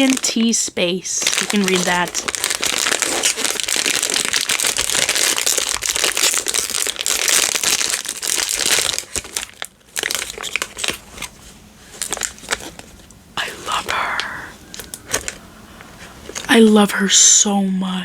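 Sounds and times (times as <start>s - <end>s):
packaging crinkling and crushed: 0.0s - 13.1s, 13.7s - 15.4s, 16.0s - 16.5s.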